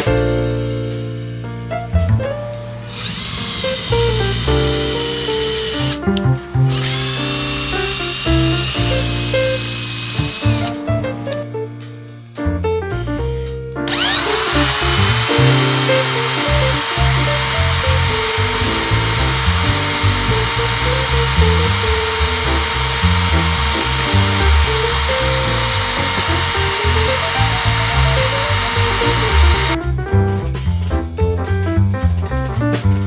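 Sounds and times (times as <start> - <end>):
vacuum cleaner motor whine: 2.7 - 11.4, 13.9 - 29.8.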